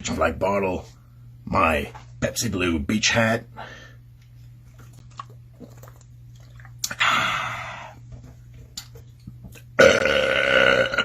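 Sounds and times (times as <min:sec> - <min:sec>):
man belching: 0:09.8 - 0:11.0.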